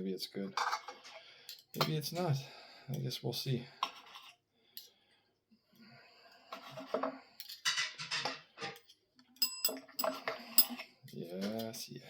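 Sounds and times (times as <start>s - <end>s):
knife and fork scraping plate: 3.8s - 4.4s, 6.5s - 8.8s
high ringing tones: 9.4s - 10.1s.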